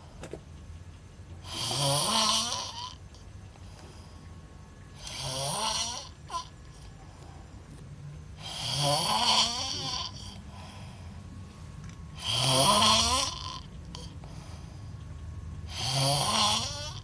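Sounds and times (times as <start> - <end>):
person snoring: 1.4 - 3.0, 5.0 - 6.5, 8.4 - 10.8, 12.2 - 14.2, 15.7 - 17.0.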